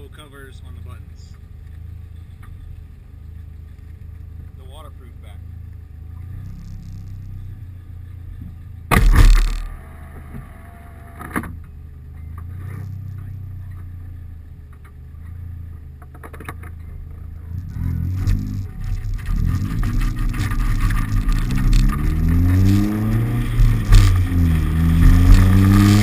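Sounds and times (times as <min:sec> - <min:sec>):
muffled car engine and road drone: 0:00.0 - 0:26.0
loud sudden thump: 0:08.9 - 0:09.8.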